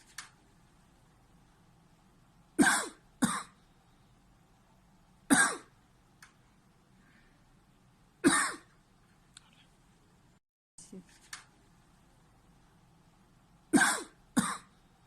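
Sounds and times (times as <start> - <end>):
man coughing: 8.3 - 8.6, 13.8 - 14.7.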